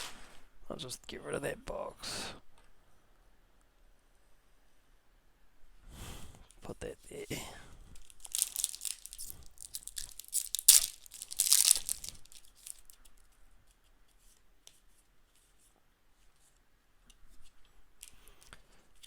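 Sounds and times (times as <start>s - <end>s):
faint light rustles and ticks: 7.9s - 19.0s
card pack packaging tearing: 8.0s - 13.0s.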